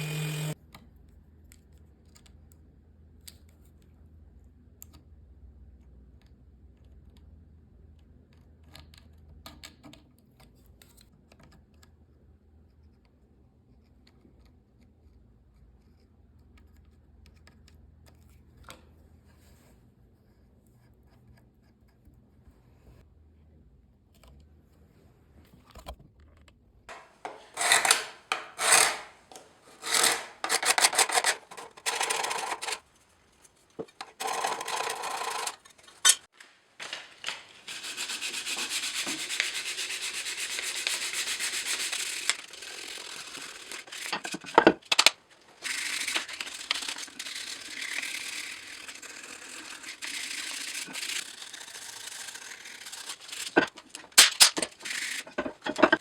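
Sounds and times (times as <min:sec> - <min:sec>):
sanding wood by hand: 0:37.6 - 0:44.5.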